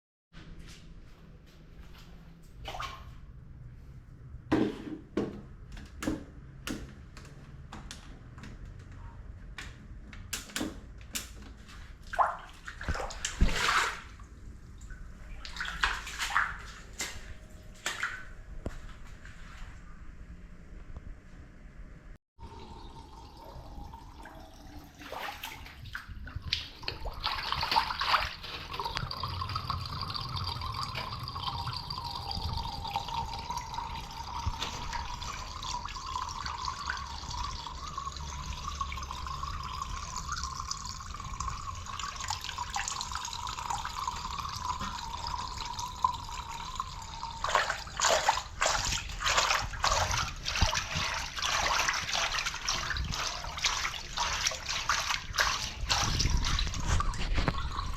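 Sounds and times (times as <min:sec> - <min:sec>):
splashes and knocks: 0:10.5 - 0:18.4, 0:25.0 - 0:29.2, 0:34.0 - 0:36.0, 0:47.4 - 0:57.9
water trickling through drain: 0:22.4 - 0:57.9.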